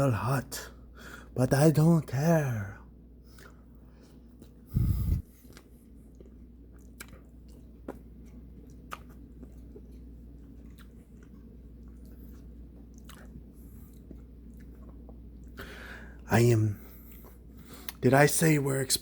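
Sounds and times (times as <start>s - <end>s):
person chewing: 3.2s - 16.2s, 16.8s - 18.0s.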